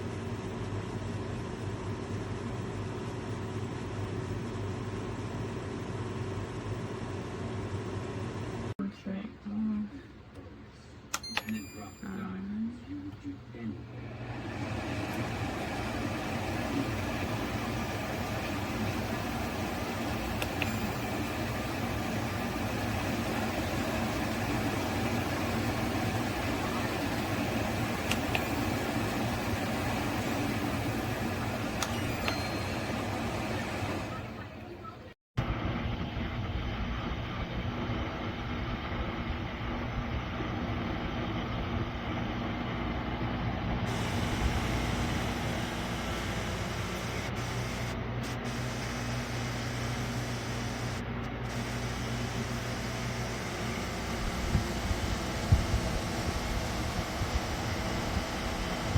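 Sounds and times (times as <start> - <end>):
portable air conditioner running: 0.0 - 58.9.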